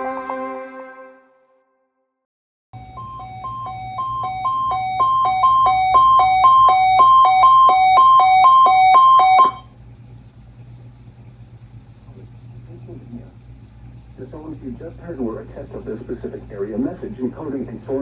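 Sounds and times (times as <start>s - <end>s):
low steady radio hum: 12.1s - 13.4s, 14.1s - 18.0s.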